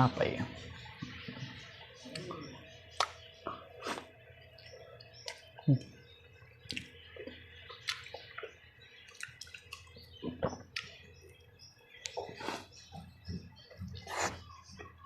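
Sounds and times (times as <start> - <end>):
wet chewing and lip-smacking: 3.0 - 3.2, 3.8 - 5.6, 6.4 - 11.4, 12.0 - 15.0.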